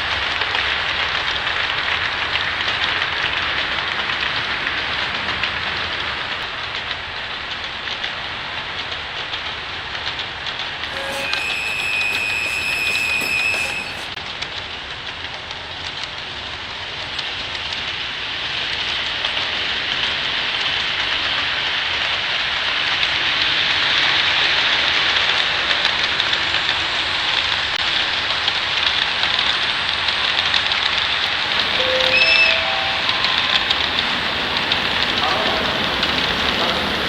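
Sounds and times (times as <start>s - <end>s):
train rushing: 10.8s - 14.2s, 31.3s - 37.0s.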